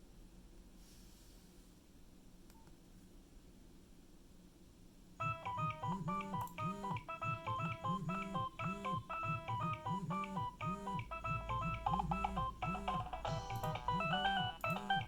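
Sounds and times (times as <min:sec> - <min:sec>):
polyphonic phone ringtone: 0:05.2 - 0:15.0.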